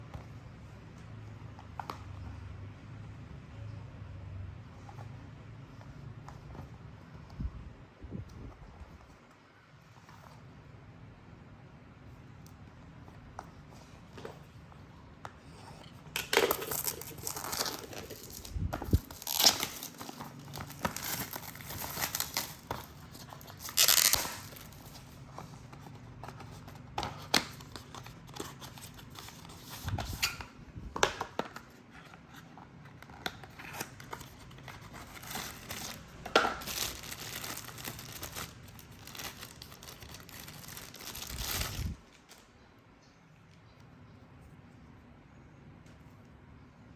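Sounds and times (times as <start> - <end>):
plastic packaging crinkling and tearing: 16.1 - 30.5, 33.0 - 42.5.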